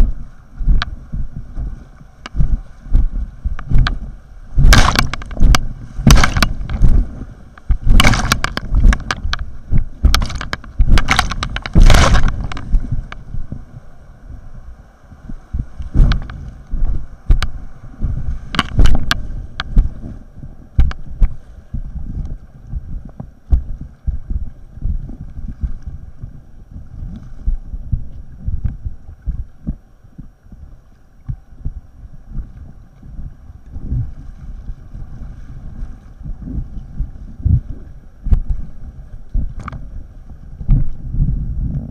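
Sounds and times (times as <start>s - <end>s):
muffled water rumble: 0.0s - 41.9s
wind buffeting: 0.0s - 41.9s
sharp knocks: 4.6s - 7.0s, 7.7s - 9.4s, 10.0s - 12.8s.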